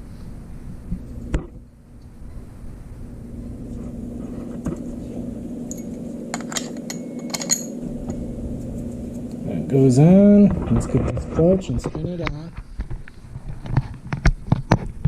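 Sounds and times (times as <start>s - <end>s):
steady low hum: 0.0s - 15.0s
small metal parts clinking: 5.7s - 7.8s.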